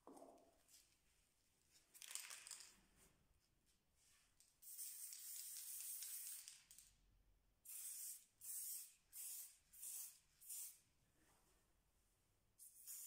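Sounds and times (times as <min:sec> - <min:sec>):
aerosol can spraying: 0:07.7 - 0:10.8, 0:12.7 - 0:13.0.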